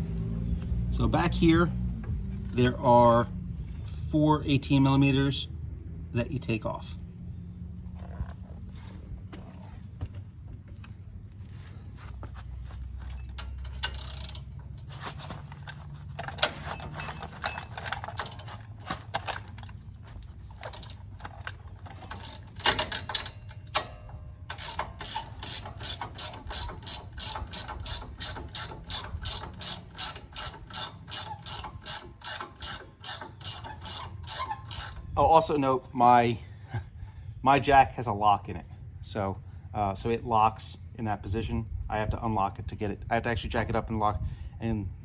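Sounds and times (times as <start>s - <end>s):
ratchet wrench clicking: 13.1s - 14.8s, 20.6s - 35.2s.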